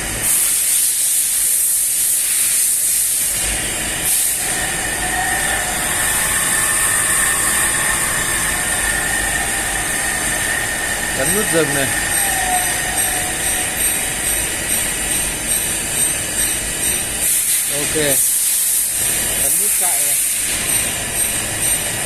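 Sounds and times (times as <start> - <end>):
machine motor hiss and hum: 0.0 - 22.0
steady motor whine: 3.2 - 16.6.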